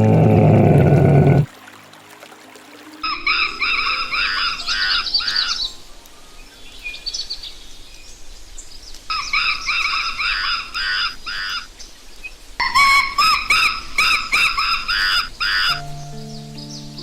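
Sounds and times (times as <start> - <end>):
bird calling ringing notes: 3.0 - 8.3.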